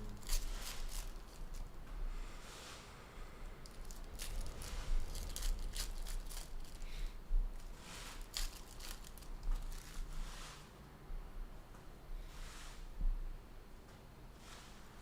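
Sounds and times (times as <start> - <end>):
foil wrappers crinkling and tearing: 0.0 - 1.7, 3.6 - 10.2.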